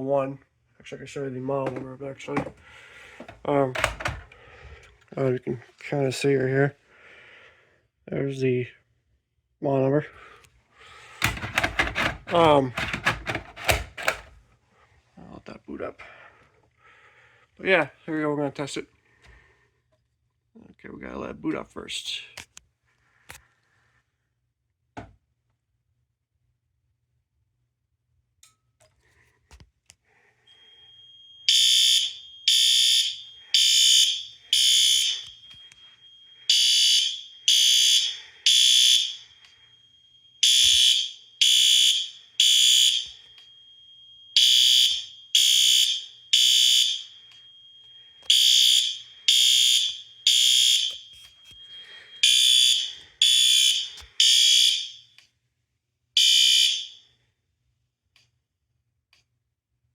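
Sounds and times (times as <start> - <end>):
fire alarm horn blasts: 3.2 - 4.3, 11.2 - 14.3, 30.5 - 55.2, 56.2 - 57.1
faint steady high beep: 30.5 - 55.0.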